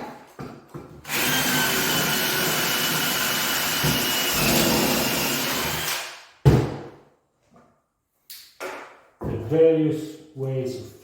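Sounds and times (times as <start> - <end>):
power tool motor running: 1.1 - 6.1
knock: 6.4 - 7.0.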